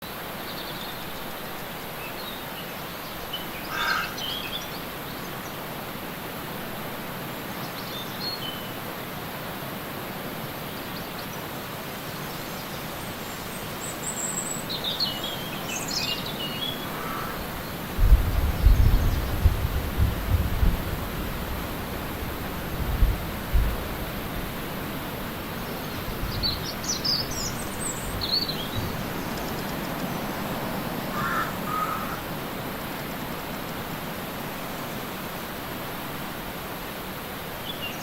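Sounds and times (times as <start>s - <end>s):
waterfall rushing: 8.2s - 37.7s
small birds chirping: 23.5s - 32.2s.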